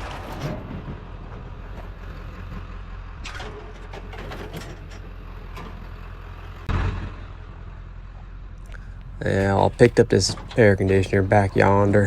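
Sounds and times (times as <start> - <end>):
vehicle engine rumbling: 0.0 - 12.0
light clicks and rattles: 8.6 - 12.0.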